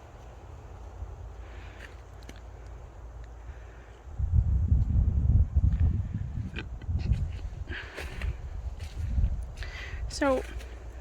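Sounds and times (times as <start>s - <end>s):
wind buffeting microphone: 2.8s - 11.0s.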